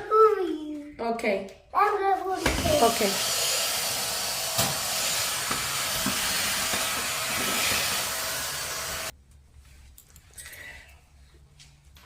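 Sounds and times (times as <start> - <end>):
cordless vacuum cleaner running: 2.4 - 9.1.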